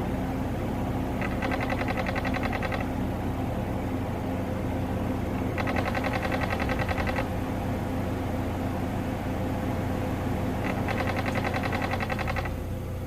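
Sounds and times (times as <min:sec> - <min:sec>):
car engine low hum: 0:00.0 - 0:13.0
mirror motor clattering clicks: 0:01.2 - 0:02.9, 0:05.6 - 0:07.3, 0:10.6 - 0:12.6.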